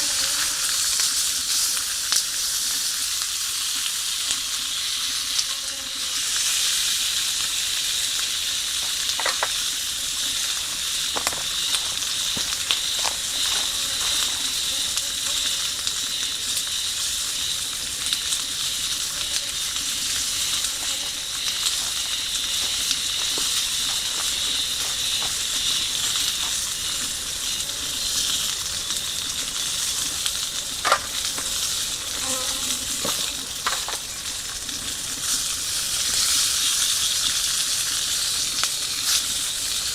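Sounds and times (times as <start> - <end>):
campfire pops and crackles: 0.0 - 5.5, 6.6 - 39.9
food sizzling in a frying pan: 0.0 - 39.9.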